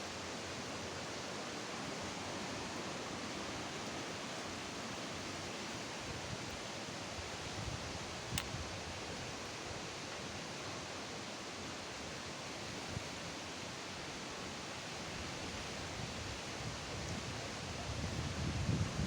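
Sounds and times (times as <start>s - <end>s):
strong wind blowing: 15.2s - 19.0s.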